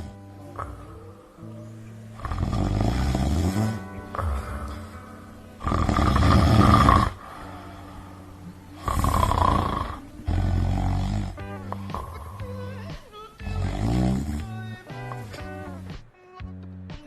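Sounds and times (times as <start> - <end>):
man snoring loudly: 0.0 - 1.2, 2.1 - 15.5.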